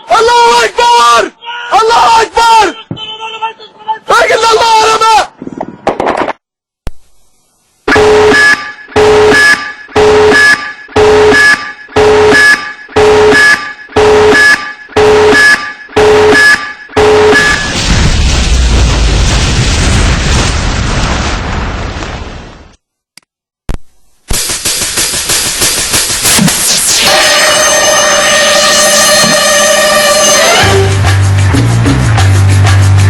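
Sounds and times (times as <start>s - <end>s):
electronic alarm buzzer: 7.9s - 17.8s, 26.6s - 30.9s
loud rumbling burst: 17.4s - 22.6s.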